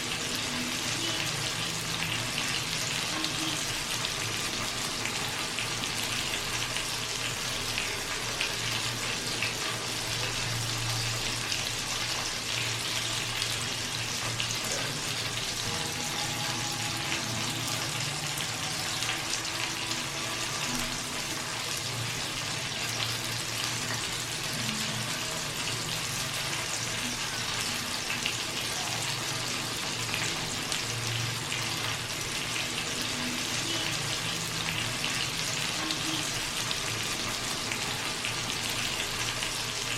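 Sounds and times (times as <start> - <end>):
fat sizzling and crackling: 0.0 - 39.9.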